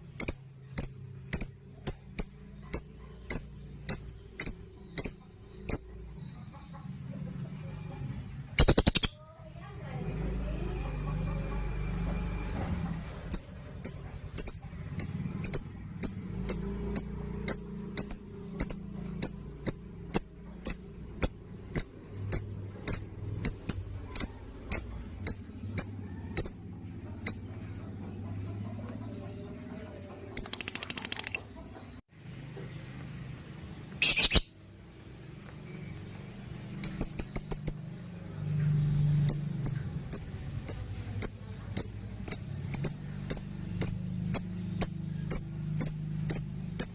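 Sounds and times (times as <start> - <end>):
lovebird chirping: 0.0 - 9.2, 13.2 - 26.6, 27.2 - 27.7, 30.2 - 32.0, 32.6 - 38.0, 39.1 - 46.9
lovebird chattering trills: 0.1 - 6.8, 8.5 - 9.2, 13.3 - 27.6, 30.2 - 31.8, 34.0 - 34.6, 36.7 - 38.0, 39.2 - 46.9.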